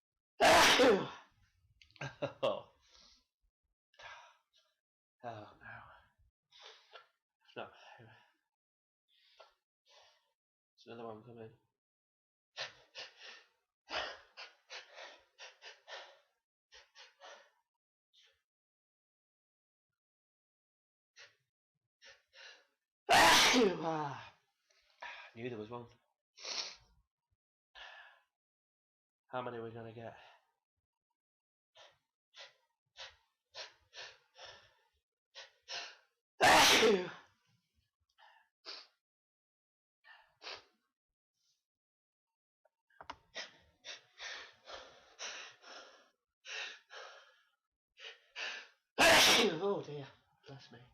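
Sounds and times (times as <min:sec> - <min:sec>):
person sneezing: 0:00.4 - 0:01.2, 0:23.1 - 0:23.9, 0:36.4 - 0:37.2, 0:49.0 - 0:49.7.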